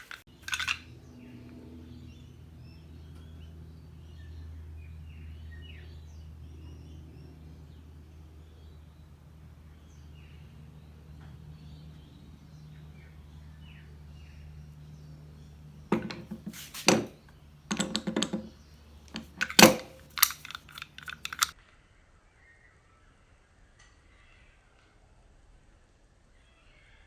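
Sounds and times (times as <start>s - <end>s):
loud clicks and knocks: 15.9s - 21.5s.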